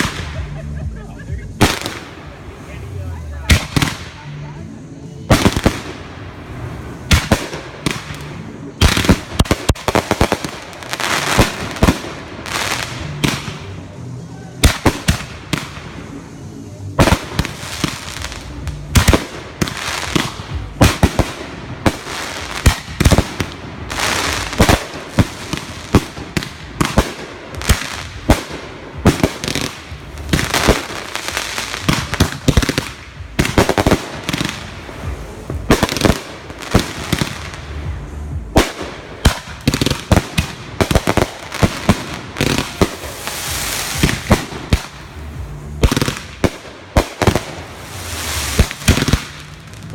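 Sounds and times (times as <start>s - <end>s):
fireworks bangs: 0.0s - 49.9s
fireworks crackling: 0.0s - 49.9s.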